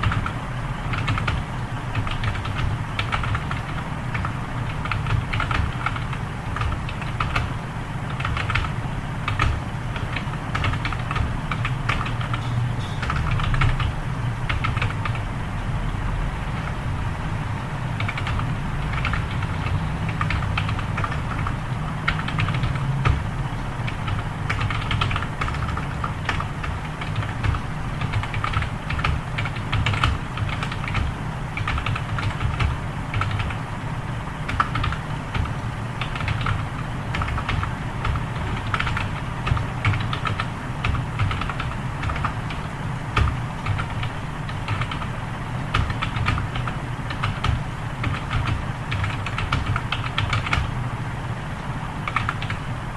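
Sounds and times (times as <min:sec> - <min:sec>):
computer keyboard typing: 0:00.0 - 0:15.3, 0:17.9 - 0:33.6, 0:34.4 - 0:50.8, 0:52.0 - 0:52.6
steady low hum: 0:00.0 - 0:52.9.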